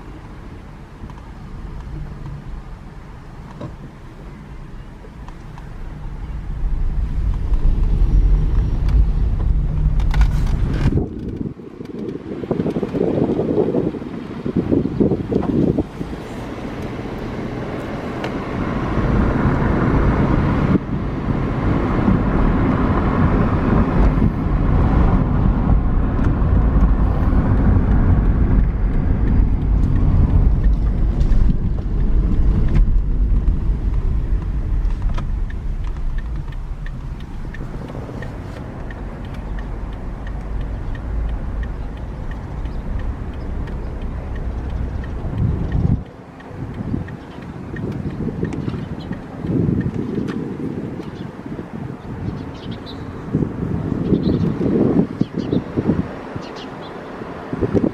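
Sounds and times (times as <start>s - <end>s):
vehicle driving rumble: 0.0s - 57.9s.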